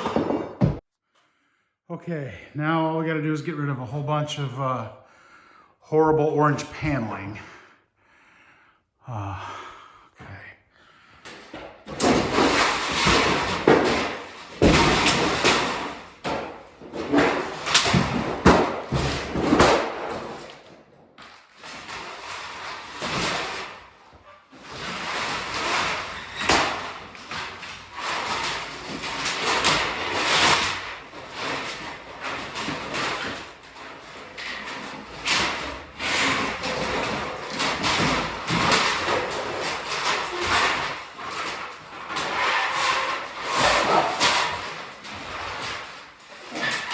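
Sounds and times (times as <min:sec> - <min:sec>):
wall paneling cracking and scraping: 0:10.8 - 0:46.9.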